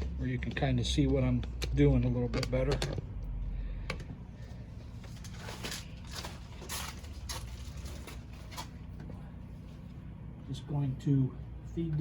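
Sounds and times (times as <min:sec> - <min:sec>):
steady low hum: 0:00.0 - 0:12.0
handling rustles and scrapes: 0:04.8 - 0:09.0.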